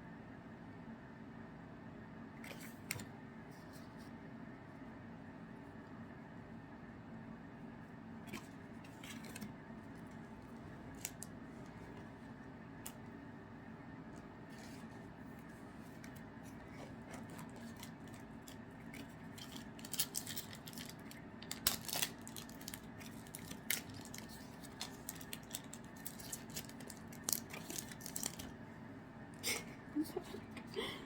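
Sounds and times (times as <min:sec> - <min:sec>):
cards clicking and rustling: 0:08.3 - 0:10.1, 0:15.9 - 0:28.5.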